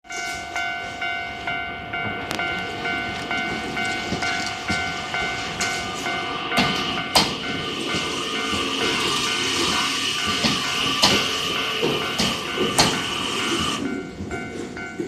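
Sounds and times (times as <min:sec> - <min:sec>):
level crossing warning bell: 0:00.0 - 0:15.0
electric train rail noise: 0:00.1 - 0:15.0
sharp rail clack: 0:03.4 - 0:15.0.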